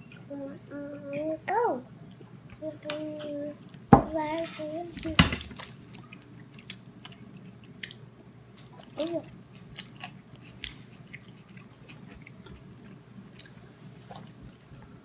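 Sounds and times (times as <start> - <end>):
baby chewing and smacking lips: 5.0 - 15.0.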